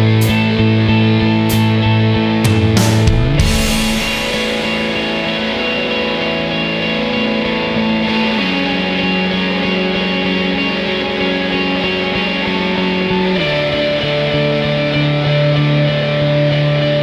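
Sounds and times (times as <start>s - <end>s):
guitar chords over a beat: 0.0s - 17.0s.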